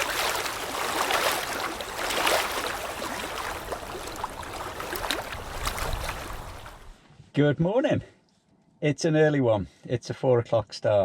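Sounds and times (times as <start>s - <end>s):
sea water washing at shore: 0.0s - 7.0s.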